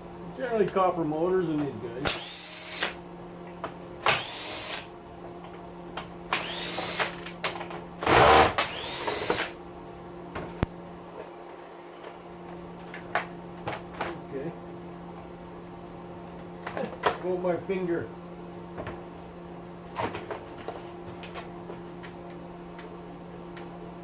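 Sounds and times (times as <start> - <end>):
steady low hum: 0.0 - 24.0
power drill whirring: 2.1 - 3.0, 4.1 - 4.9, 6.3 - 7.2, 8.0 - 9.6.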